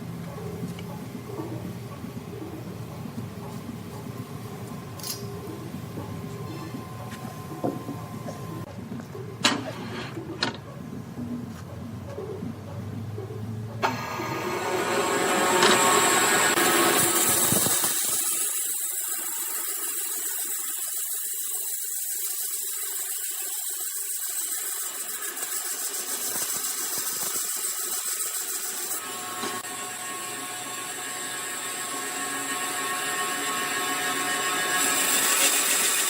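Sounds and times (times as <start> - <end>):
power tool whining on wood: 13.8 - 36.0.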